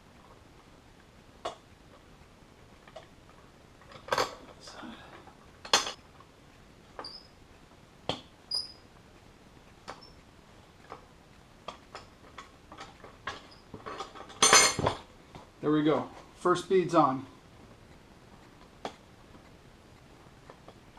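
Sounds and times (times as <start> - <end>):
short high squeaks: 7.0 - 7.4, 8.5 - 8.9.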